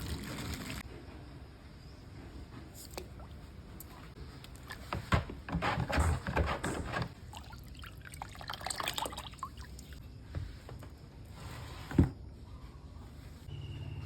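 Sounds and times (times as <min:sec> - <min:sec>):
liquid pouring and splashing: 0:07.2 - 0:10.0.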